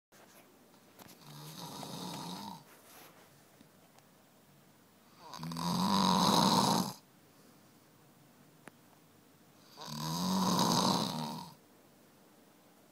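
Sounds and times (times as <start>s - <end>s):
snoring: 1.2s - 2.7s, 5.1s - 7.0s, 9.6s - 11.6s.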